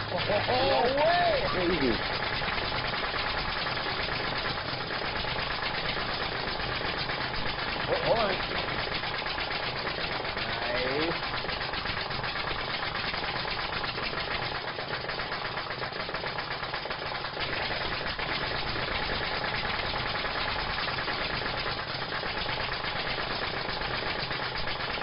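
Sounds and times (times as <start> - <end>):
small engine knocking steadily: 0.0 - 25.0.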